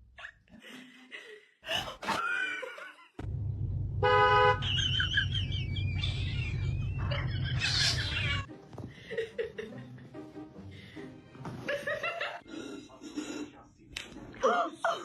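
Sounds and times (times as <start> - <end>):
vehicle engine rumble: 3.2 - 8.5
car horn toot: 4.0 - 4.6.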